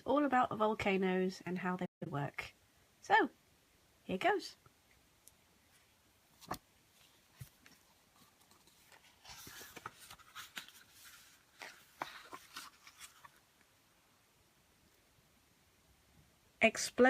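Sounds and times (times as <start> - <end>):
book pages turning: 6.3 - 13.7.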